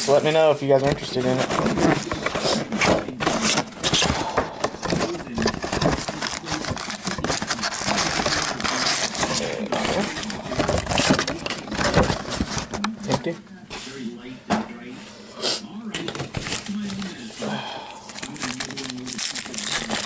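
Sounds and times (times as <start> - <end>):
plastic wrappers crinkling and tearing: 0.1 - 13.3, 16.2 - 17.2, 18.0 - 20.0
cards being handled: 0.2 - 13.9, 18.0 - 20.0.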